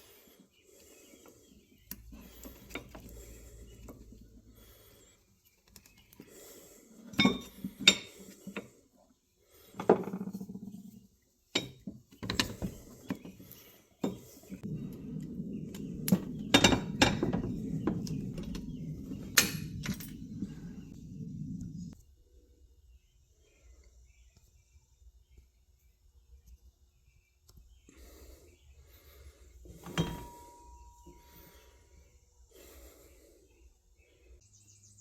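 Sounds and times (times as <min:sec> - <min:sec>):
low rumbling noise: 0:14.6 - 0:22.0
metal tools clinking: 0:16.5 - 0:20.6, 0:29.7 - 0:31.4.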